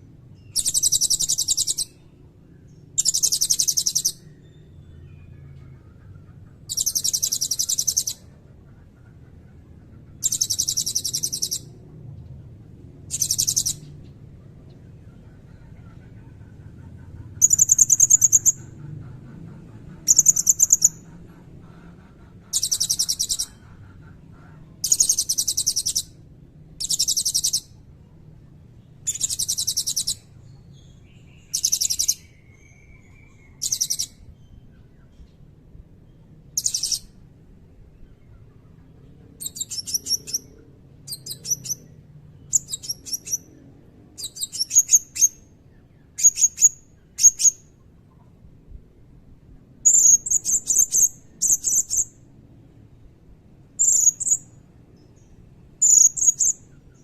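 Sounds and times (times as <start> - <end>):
parrot chirps: 0.4 - 2.0, 3.0 - 4.9, 5.8 - 8.4, 10.2 - 11.7, 13.1 - 13.9, 17.3 - 26.1, 26.8 - 27.8, 29.0 - 34.2, 36.6 - 37.1, 39.4 - 43.5, 44.2 - 45.5, 46.2 - 47.7, 53.8 - 54.6, 55.8 - 56.7.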